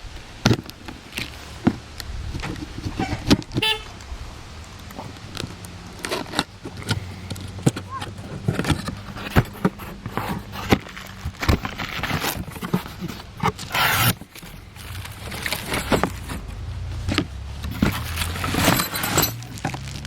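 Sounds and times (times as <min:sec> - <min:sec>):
packaging rustling: 0:04.9 - 0:20.0
cardboard box knocks and scrapes: 0:06.2 - 0:20.0.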